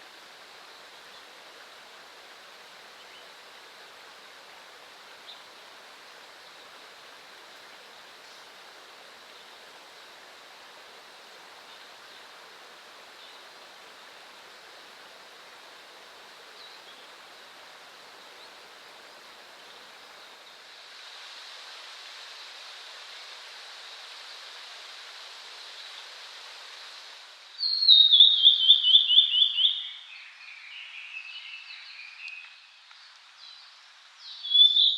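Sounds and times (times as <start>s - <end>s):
stream rushing: 0.0s - 27.8s
bird singing: 27.6s - 32.7s, 34.2s - 34.9s.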